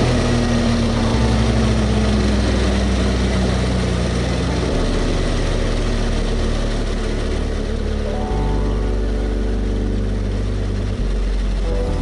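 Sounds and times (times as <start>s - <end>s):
motorcycle engine running: 0.0s - 12.0s.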